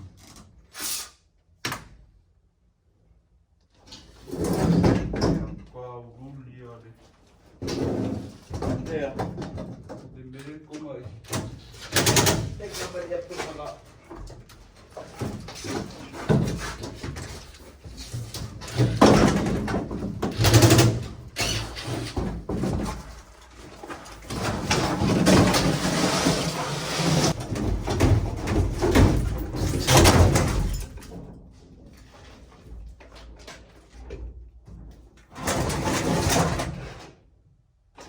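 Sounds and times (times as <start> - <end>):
metal parts banging and scraping: 11.4 - 32.4.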